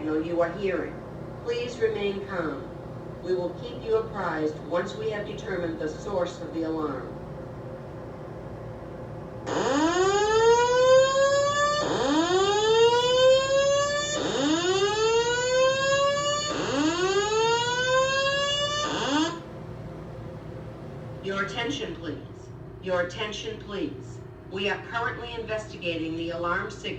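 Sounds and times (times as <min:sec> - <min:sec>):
fire alarm rising whoops: 0:09.5 - 0:19.5.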